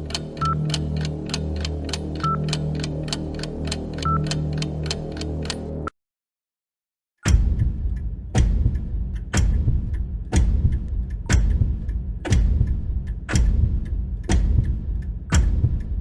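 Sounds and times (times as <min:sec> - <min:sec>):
clock-like ticks: 0:00.0 - 0:05.9, 0:07.2 - 0:16.0
deep low rumble: 0:07.3 - 0:16.0.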